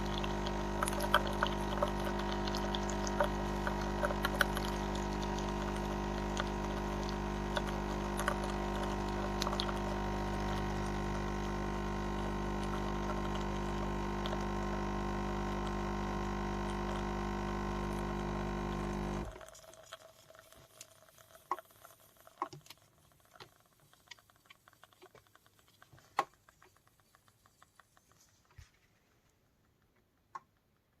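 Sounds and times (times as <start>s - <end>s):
small clicks and ticks: 0.0s - 11.5s, 19.2s - 31.0s
coffee machine pump humming: 0.0s - 27.1s.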